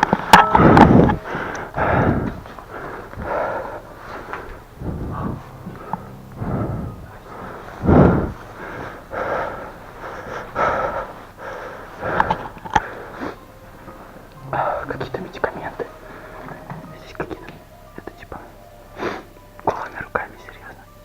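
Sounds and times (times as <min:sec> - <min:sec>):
heavy breathing: 0:00.0 - 0:19.8.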